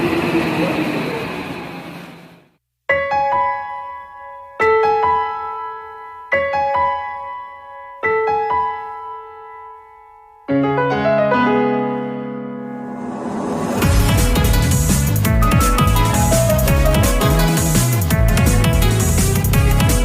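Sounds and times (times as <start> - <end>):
solo piano music: 2.9 - 14.6.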